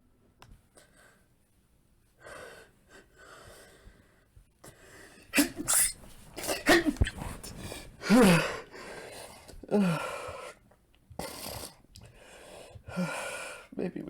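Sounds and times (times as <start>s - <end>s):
man sneezing: 5.3s - 7.3s, 8.0s - 8.6s.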